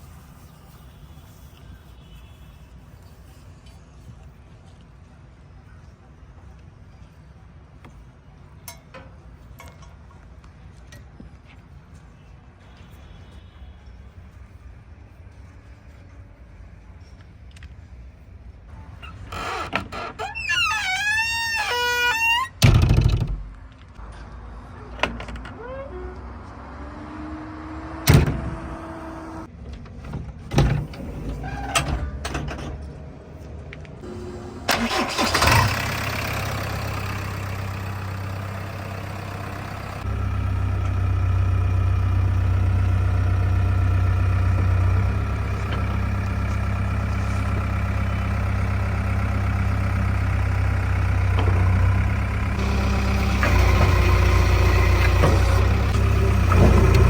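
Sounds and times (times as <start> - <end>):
diesel engine running: 33.5 - 57.0.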